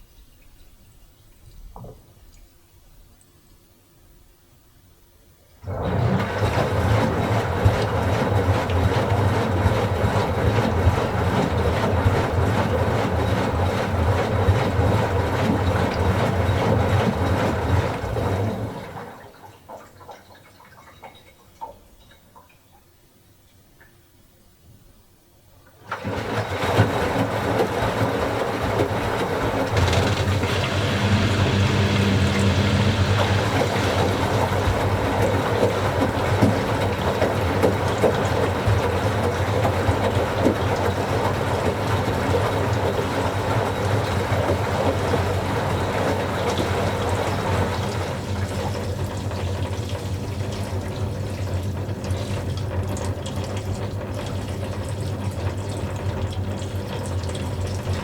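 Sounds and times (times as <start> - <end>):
water rushing into washing machine: 5.6 - 21.2, 25.8 - 58.0
low hum: 29.4 - 36.8.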